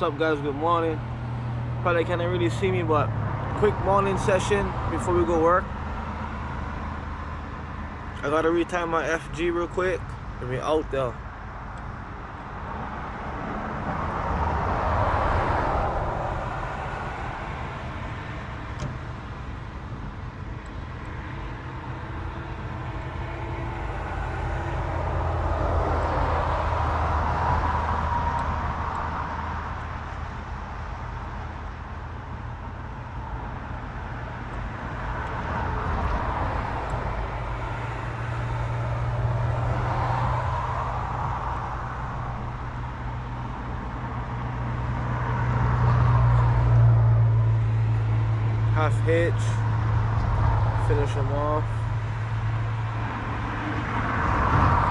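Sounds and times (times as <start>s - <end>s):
vehicles passing on road: 0.0s - 54.9s.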